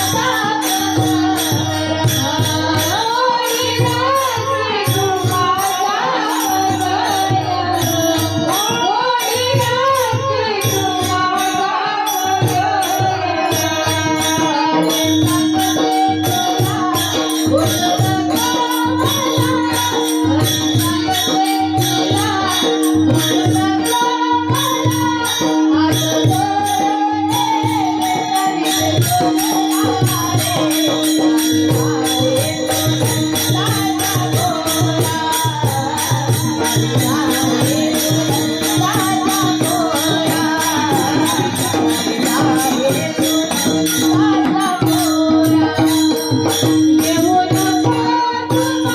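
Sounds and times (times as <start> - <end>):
high percussion beat: 0.0 - 48.9
woman singing devotional song: 0.0 - 48.9
steady held drone: 10.6 - 48.9
drum beat: 28.4 - 48.7.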